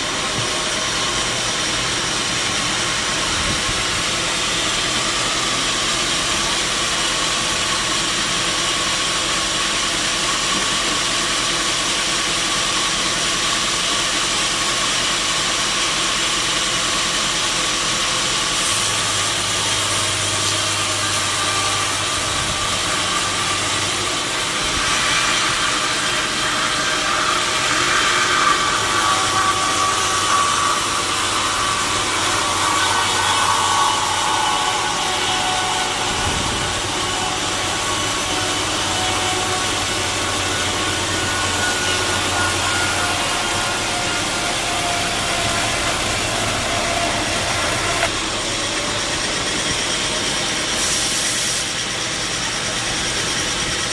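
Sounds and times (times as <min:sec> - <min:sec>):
sawmill machinery drone: 0:00.0 - 0:53.9
high-pitched whine: 0:17.4 - 0:53.9.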